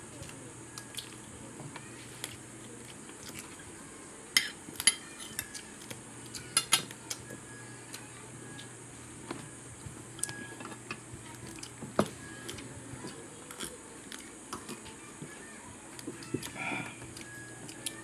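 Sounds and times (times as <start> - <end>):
steady low hum: 0.0 - 18.0
person chewing: 0.2 - 1.3, 2.2 - 3.6, 13.5 - 14.8.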